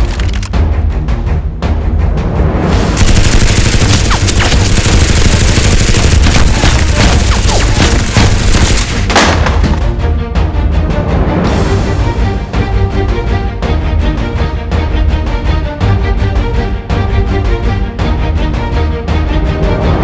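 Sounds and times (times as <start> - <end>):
background music: 0.0 - 20.0
rapid gunfire-like shots: 3.0 - 9.2.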